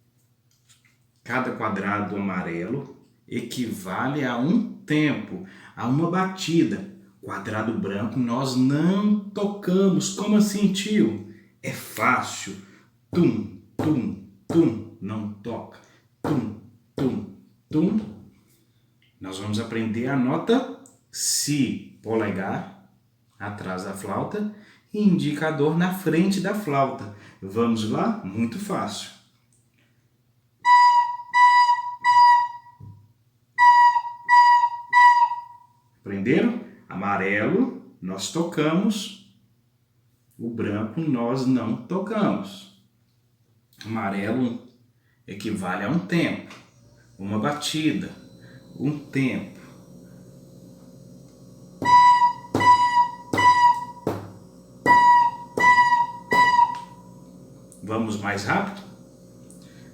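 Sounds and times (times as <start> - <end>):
recorder playing short notes: 30.6 - 32.8, 33.6 - 35.7, 51.8 - 54.2, 54.8 - 57.1
recorder short tongued notes: 30.7 - 32.8, 33.6 - 35.6.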